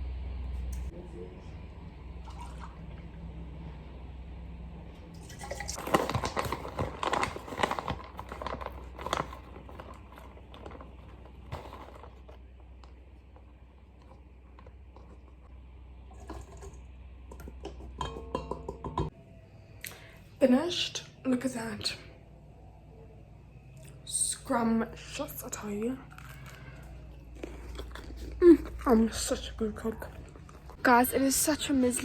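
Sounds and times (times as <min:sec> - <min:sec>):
clicks taps and rustles in a bowl: 0:16.3 - 0:19.2.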